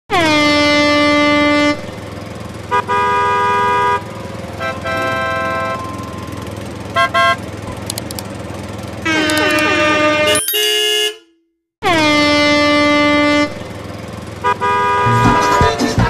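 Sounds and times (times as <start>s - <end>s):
vehicle horn honks: 0.1s - 1.9s, 2.7s - 7.5s, 9.0s - 13.8s, 14.4s - 16.0s
low engine hum: 4.0s - 10.2s.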